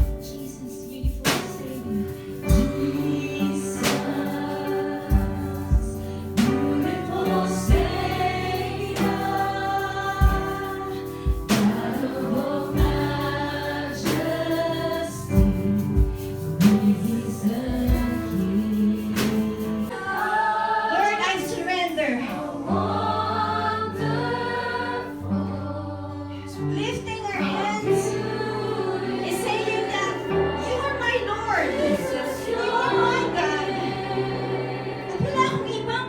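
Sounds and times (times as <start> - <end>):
band with steady drum beat: 0.0 - 0.3, 1.0 - 3.2, 10.2 - 12.0
group of voices singing: 0.0 - 36.0.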